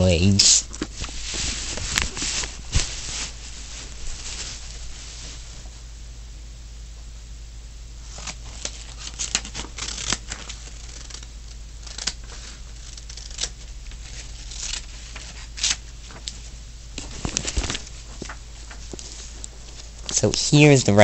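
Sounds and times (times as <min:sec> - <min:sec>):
steady low hum: 0:00.0 - 0:21.0
scissors cutting paper: 0:08.2 - 0:15.8.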